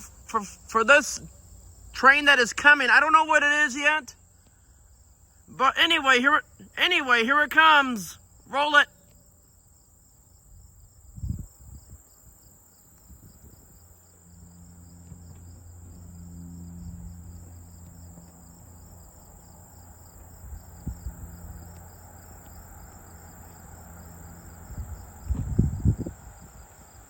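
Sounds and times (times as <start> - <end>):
insects chirping: 0.0 - 27.0
faint low engine rumble: 13.1 - 27.0.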